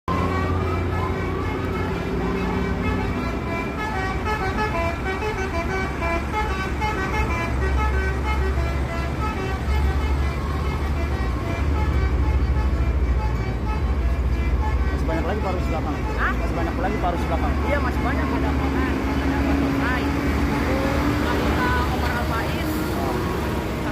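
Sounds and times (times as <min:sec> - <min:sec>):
bus engine hum: 0:00.1 - 0:23.9
bus multi-tone horn tune: 0:00.1 - 0:23.9.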